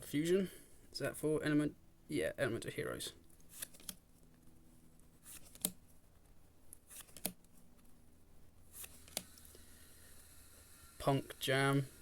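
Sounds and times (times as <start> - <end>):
cards rustling: 3.3 - 4.3, 5.1 - 6.0, 6.7 - 7.9
cards snapping: 3.4 - 4.0, 5.2 - 5.8, 6.8 - 7.4.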